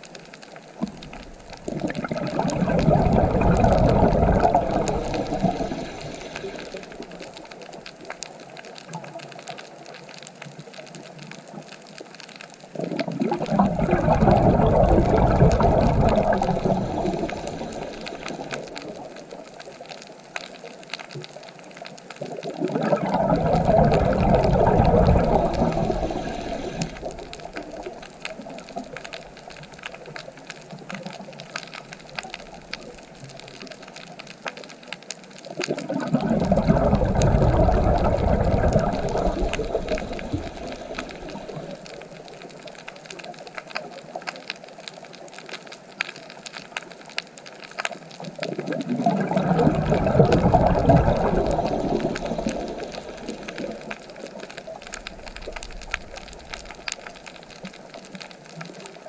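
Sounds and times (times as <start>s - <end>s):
water hissing: 1.1s - 7.8s, 13.0s - 19.4s, 22.5s - 30.1s, 35.8s - 42.6s, 49.1s - 57.6s
ocean waves breaking: 1.4s - 7.6s, 13.4s - 19.3s, 22.6s - 28.8s, 35.8s - 42.2s, 48.8s - 54.2s.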